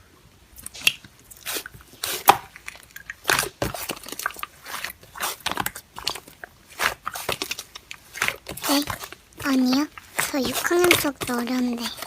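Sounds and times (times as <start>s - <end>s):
slime squished by hand: 0.6s - 12.0s.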